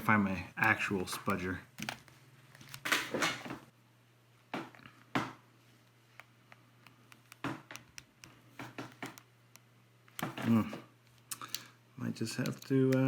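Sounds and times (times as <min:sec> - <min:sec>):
plastic and tools clicking: 0:12.4 - 0:13.0.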